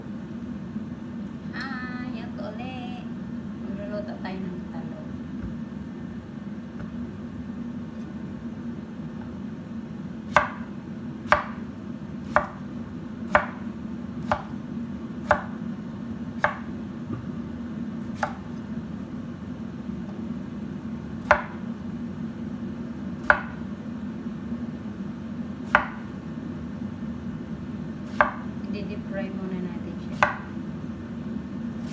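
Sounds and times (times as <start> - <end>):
steady low hum: 0.0 - 31.9
knife chopping on cutting board: 10.3 - 10.7, 11.3 - 12.7, 13.3 - 14.6, 15.2 - 15.6, 16.4 - 17.4, 18.0 - 18.6, 21.2 - 21.6, 23.2 - 23.7, 25.7 - 26.2, 28.0 - 28.5, 30.1 - 30.6.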